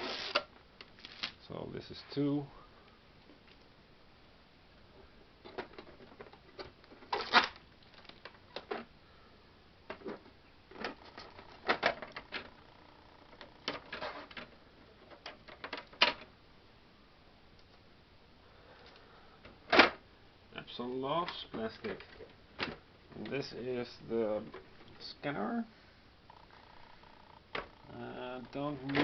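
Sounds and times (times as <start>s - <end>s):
plastic packaging crinkling: 0.0s - 1.4s, 7.1s - 8.3s.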